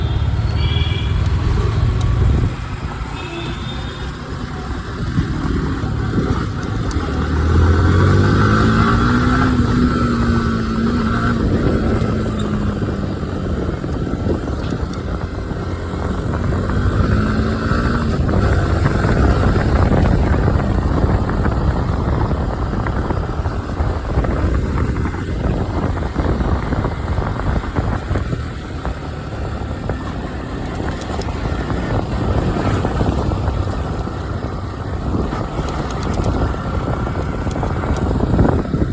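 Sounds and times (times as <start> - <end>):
high-pitched horn beeps: 0.0 - 1.6, 3.1 - 4.2
motorcycle engine running: 0.0 - 38.9.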